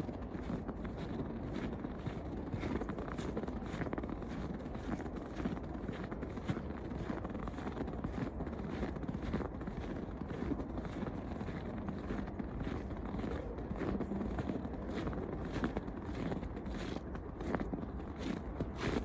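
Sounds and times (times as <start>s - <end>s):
wind rumble on microphone: 0.0s - 19.0s
footsteps crunching in snow: 9.3s - 19.0s.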